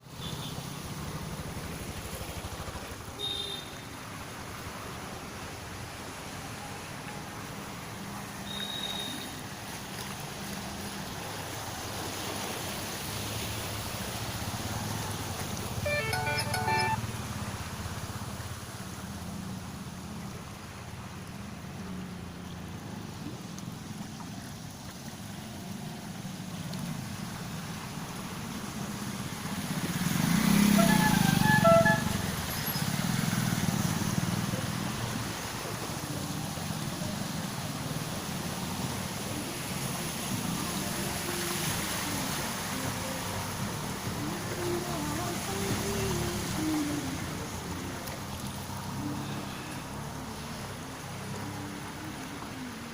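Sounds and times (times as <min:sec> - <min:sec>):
storm water rushing along street: 0:00.0 - 0:52.9
brief pitched call: 0:15.8 - 0:17.0
vehicle engine passing: 0:29.5 - 0:35.3.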